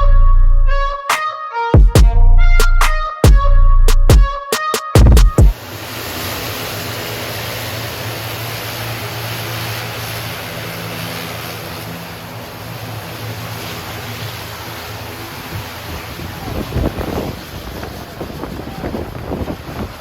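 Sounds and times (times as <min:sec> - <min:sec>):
aircraft engines rushing noise: 0:05.4 - 0:20.0
low engine hum: 0:05.5 - 0:20.0.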